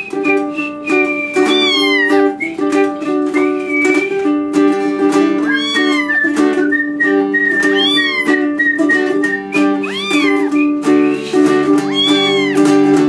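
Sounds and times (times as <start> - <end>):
ukulele playing: 0.0 - 13.0
cat meowing: 1.5 - 2.4, 5.4 - 6.4, 7.7 - 8.5, 9.8 - 10.6, 11.8 - 13.0.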